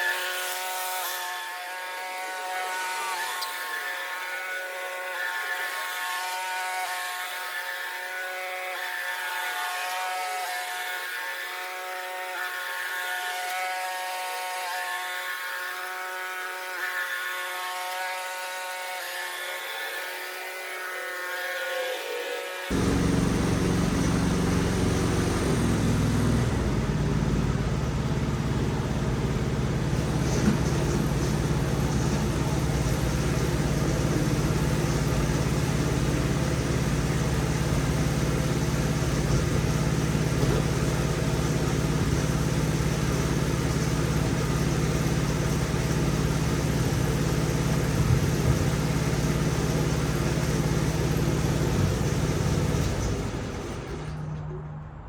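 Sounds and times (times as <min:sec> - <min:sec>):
lawn mower engine running: 0:22.7 - 0:54.2.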